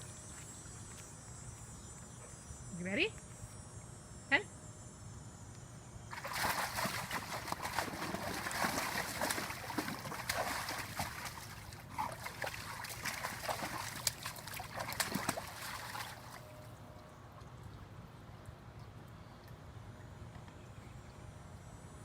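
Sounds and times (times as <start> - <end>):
water splashing in a pool: 6.1 - 16.6.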